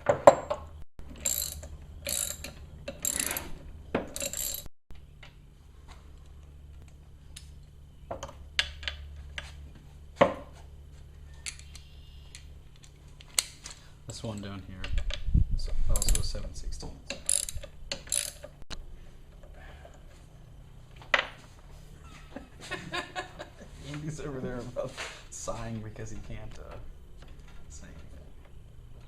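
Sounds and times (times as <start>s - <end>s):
ratchet wrench clicking: 1.1s - 3.5s, 4.1s - 4.7s, 16.0s - 16.4s, 17.1s - 18.5s.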